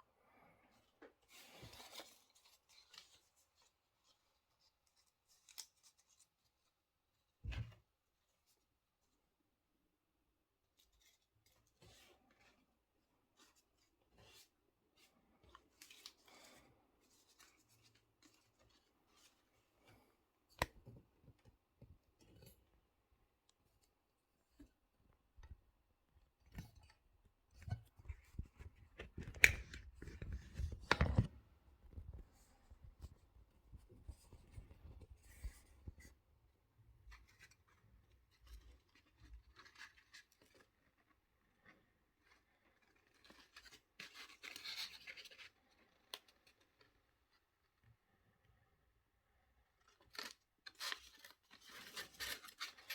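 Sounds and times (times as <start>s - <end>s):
paper rustling and crinkling: 1.2s - 6.6s, 27.6s - 36.1s, 42.6s - 47.0s, 49.9s - 52.9s.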